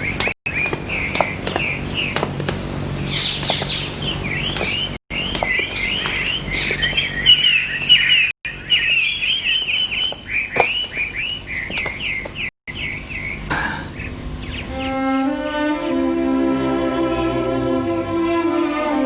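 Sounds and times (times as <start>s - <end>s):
small songbird chirping: 0.0s - 15.0s.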